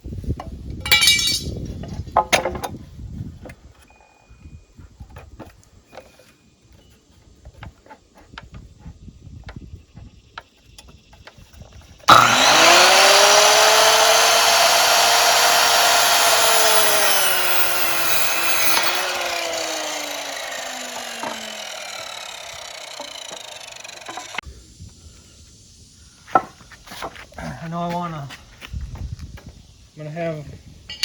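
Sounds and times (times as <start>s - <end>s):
electric power saw cutting wood: 12.1s - 24.4s
lumber and tools knocking: 14.2s - 24.4s.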